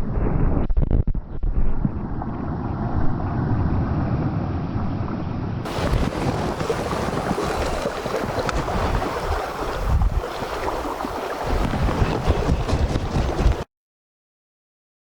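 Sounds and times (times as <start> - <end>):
wind buffeting microphone: 0.0 - 13.7
sea surf rushing: 5.6 - 13.7.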